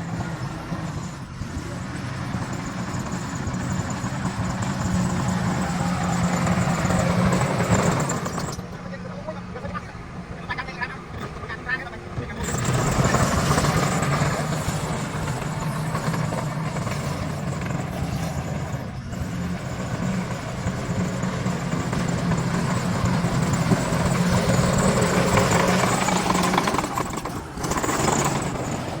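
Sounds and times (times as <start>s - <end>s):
bulldozer diesel engine running: 0.0s - 29.0s.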